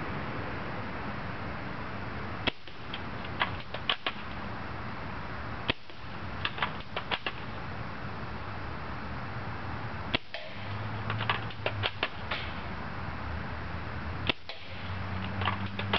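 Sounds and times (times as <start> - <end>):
steady hiss: 0.0 - 15.9
airsoft rifle shots: 2.4 - 4.4, 5.7 - 7.6, 10.1 - 12.7, 14.2 - 15.9.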